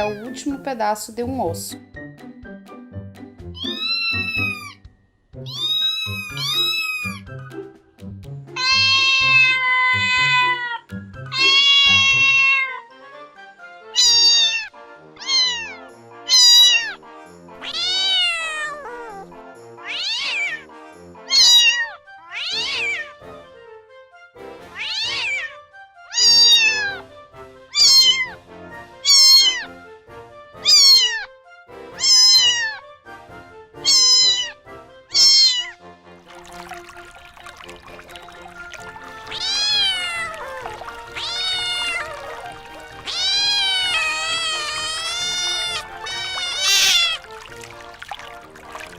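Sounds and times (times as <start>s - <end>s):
soft background music: 0.0s - 48.9s
cat meowing: 3.6s - 4.8s, 5.4s - 7.2s, 8.6s - 12.9s, 14.0s - 17.0s, 17.6s - 20.7s, 21.3s - 23.2s, 24.7s - 27.0s, 27.7s - 28.4s, 29.0s - 29.7s, 30.6s - 31.3s, 32.0s - 32.8s, 33.8s - 35.8s, 39.0s - 48.9s.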